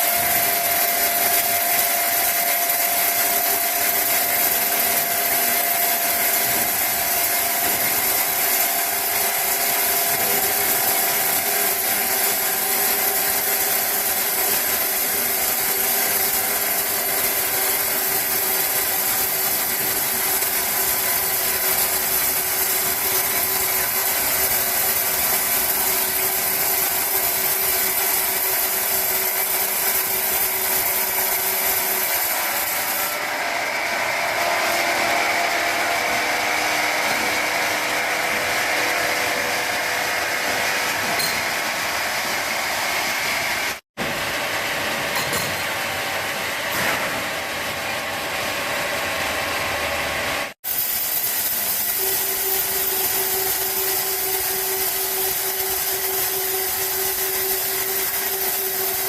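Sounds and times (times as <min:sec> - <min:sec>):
sawmill saw cutting log: 0:00.0 - 0:45.0, 0:46.1 - 0:59.0.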